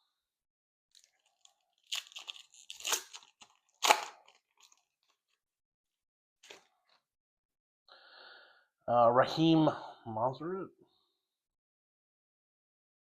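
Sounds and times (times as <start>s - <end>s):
wrapper and cards crinkling: 0.9s - 5.5s.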